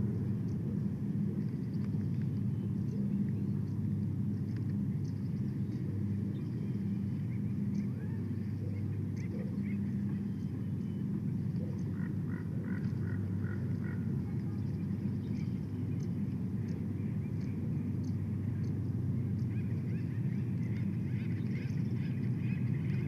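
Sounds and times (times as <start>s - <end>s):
steady low rumble: 0.0s - 23.0s
bird calls: 5.0s - 23.0s.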